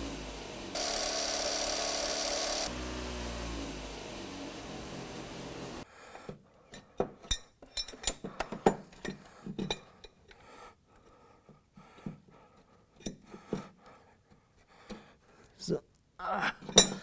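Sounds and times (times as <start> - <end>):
metal tools clinking: 6.7 - 10.4.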